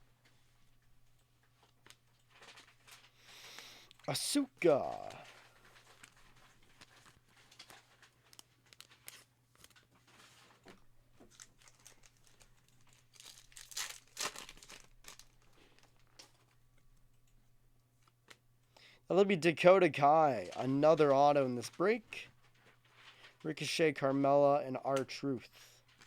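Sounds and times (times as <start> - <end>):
foil wrappers crinkling and tearing: 1.6 - 4.0, 4.8 - 16.6
cards being handled: 4.6 - 15.3.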